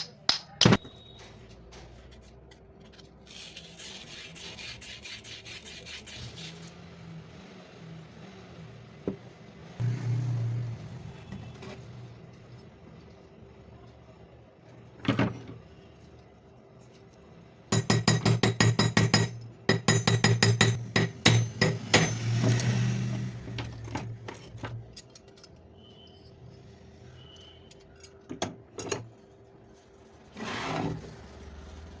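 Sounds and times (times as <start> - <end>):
metal-on-metal tapping: 17.7 - 22.7.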